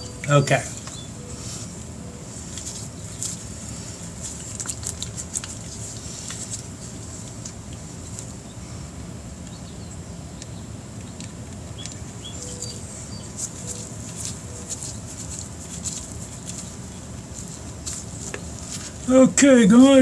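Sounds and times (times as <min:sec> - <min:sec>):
low background rumble: 0:00.0 - 0:20.0
faint bird chirps: 0:11.8 - 0:14.8.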